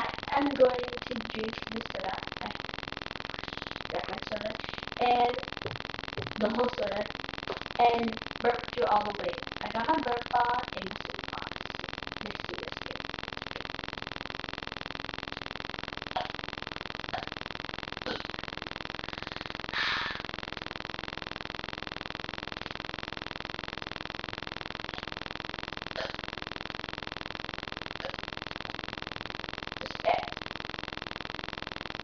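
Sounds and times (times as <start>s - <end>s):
electronic hiss and buzz: 0.0s - 32.0s
short breathy hiss: 19.1s - 20.2s.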